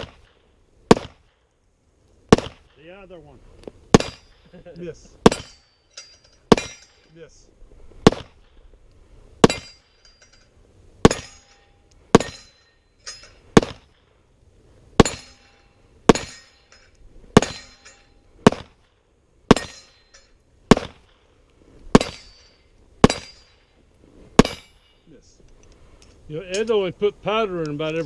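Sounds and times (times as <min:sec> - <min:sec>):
pistol shots: 0:00.0 - 0:01.4, 0:02.3 - 0:02.8, 0:03.9 - 0:04.4, 0:06.5 - 0:06.8, 0:08.0 - 0:08.6, 0:09.4 - 0:09.7, 0:13.5 - 0:13.9, 0:15.0 - 0:15.3, 0:18.4 - 0:18.8, 0:19.5 - 0:19.8, 0:20.7 - 0:21.2, 0:21.9 - 0:22.3, 0:23.0 - 0:23.4, 0:24.4 - 0:24.7
steel plate ringing: 0:05.2 - 0:07.3, 0:09.4 - 0:13.6, 0:15.0 - 0:18.3, 0:19.5 - 0:20.5, 0:21.9 - 0:23.8, 0:24.4 - 0:25.2.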